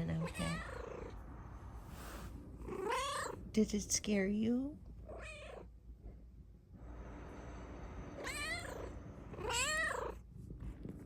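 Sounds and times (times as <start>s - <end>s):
cat meowing: 0.1s - 1.1s, 2.6s - 3.4s, 5.1s - 5.7s, 8.2s - 10.2s.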